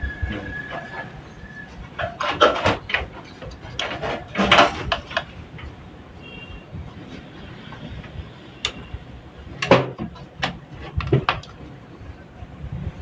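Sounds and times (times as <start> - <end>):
metal computer case knocking: 1.9 - 5.7, 9.6 - 11.6.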